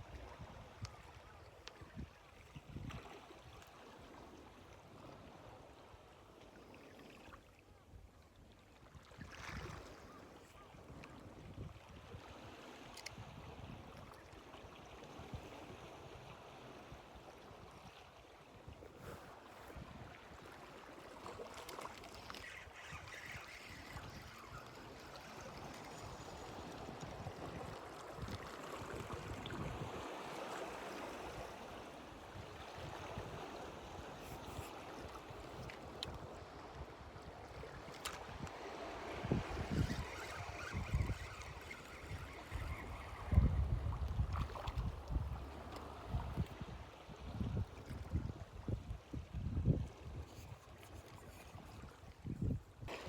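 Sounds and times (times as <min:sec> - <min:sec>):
water: 0:00.0 - 0:53.0
wind noise: 0:38.3 - 0:50.6, 0:51.3 - 0:53.0.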